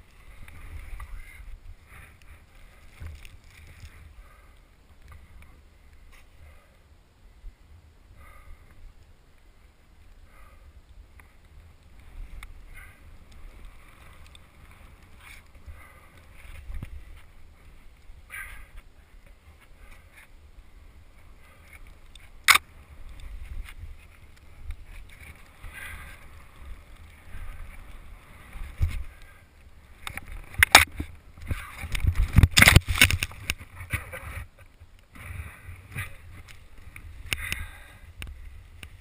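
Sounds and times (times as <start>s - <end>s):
person breathing heavily: 0.2s - 3.0s, 3.8s - 5.6s, 6.2s - 6.9s, 8.1s - 8.9s, 10.2s - 10.9s, 12.6s - 22.0s, 25.4s - 29.6s, 35.1s - 38.6s.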